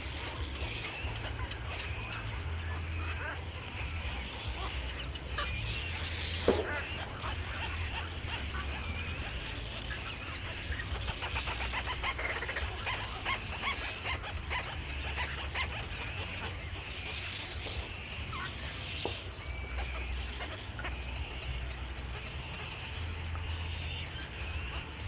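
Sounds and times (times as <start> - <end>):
birds chirping and chattering: 0.0 - 25.0
low steady hum: 0.0 - 25.0.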